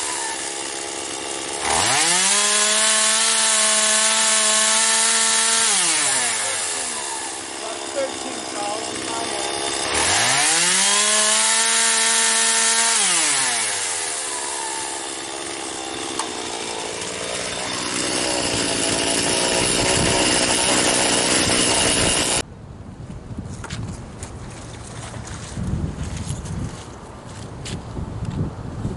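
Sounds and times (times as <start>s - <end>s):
chainsaw revving and cutting wood: 0.0s - 22.5s.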